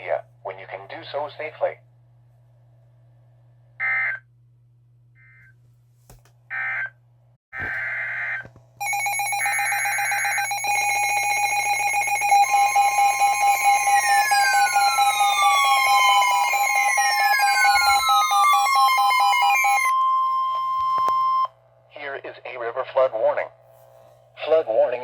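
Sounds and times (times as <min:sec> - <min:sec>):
loud steady electronic alert tone: 0:07.6 - 0:21.5.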